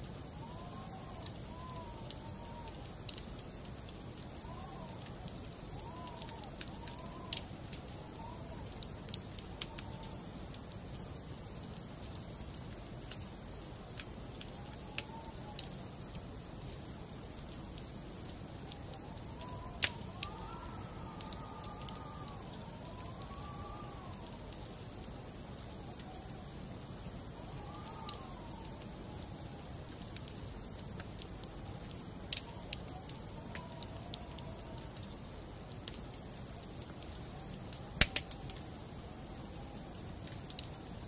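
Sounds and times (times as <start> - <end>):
low rush of fire: 0.0 - 41.0
wood fire crackling and popping: 0.0 - 41.0.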